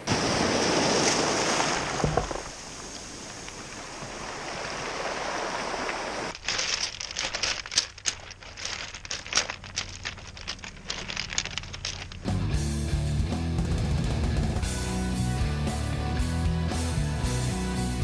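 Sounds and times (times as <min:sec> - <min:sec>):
surf washing over cobblestones: 0:00.0 - 0:06.8
stones clattering: 0:06.3 - 0:12.3.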